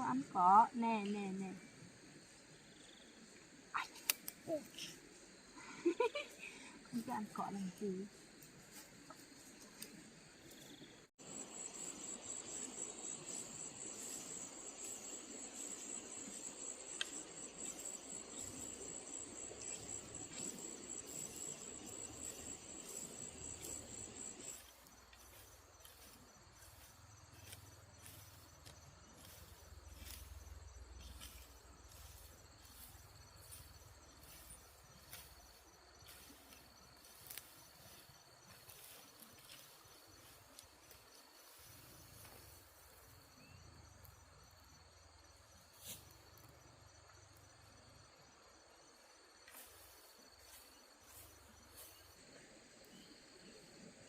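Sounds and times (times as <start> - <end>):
faint insect sound: 0.0 - 54.0
insects trilling: 1.4 - 54.0
light ticks: 17.0 - 17.2.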